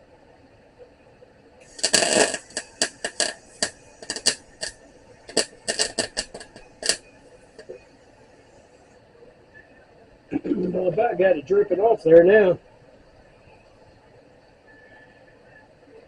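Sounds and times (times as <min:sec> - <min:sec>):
welder arc crackling: 0:01.6 - 0:09.0.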